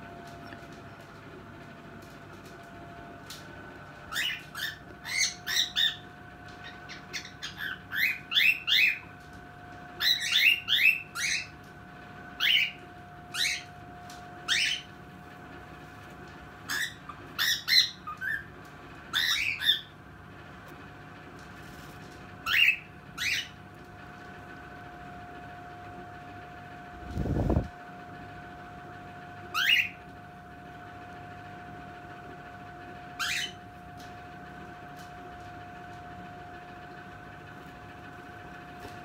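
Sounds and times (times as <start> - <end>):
cockatiel squawks and chirps: 4.1 - 9.0, 10.0 - 11.5, 16.7 - 18.5, 19.1 - 19.9, 29.5 - 30.0, 33.2 - 33.6.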